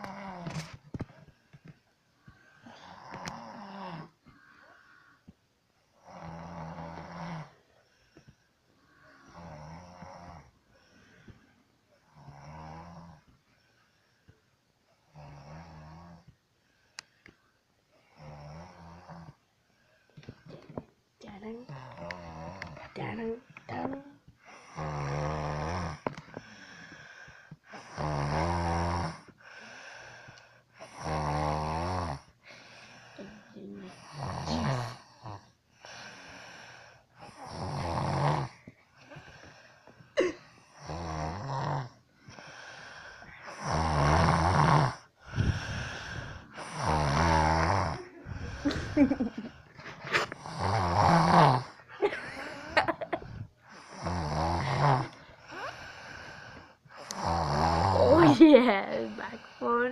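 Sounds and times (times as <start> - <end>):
soft breaths: 0.0 - 31.1, 32.2 - 59.9
person snoring: 2.6 - 5.0, 6.0 - 7.6, 9.0 - 10.5, 12.1 - 13.2, 18.1 - 19.4, 21.7 - 27.1, 27.7 - 29.3, 30.8 - 32.3, 33.2 - 38.6, 40.2 - 59.8.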